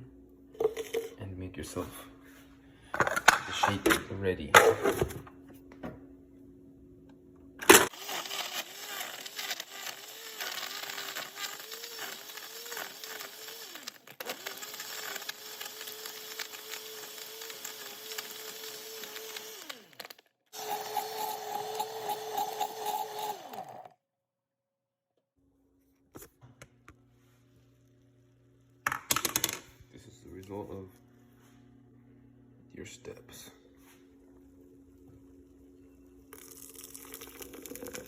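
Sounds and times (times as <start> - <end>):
blender crushing ice: 7.6 - 23.9, 36.3 - 38.0.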